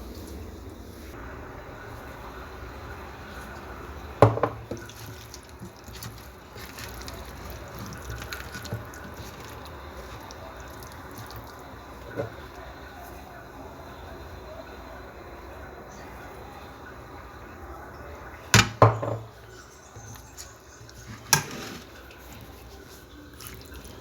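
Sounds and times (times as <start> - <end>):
water dripping and splashing in sink: 3.2 - 12.8, 20.0 - 24.0.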